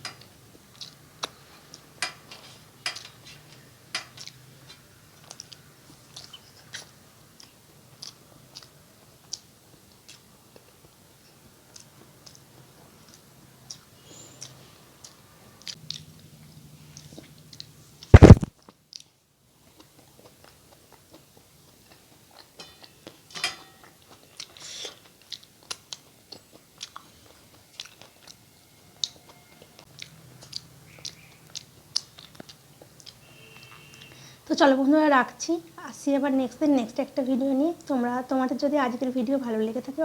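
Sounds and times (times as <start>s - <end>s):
chewing with wet mouth smacks: 0.2s - 1.9s, 3.0s - 34.2s
loud sharp knock: 18.2s - 18.5s.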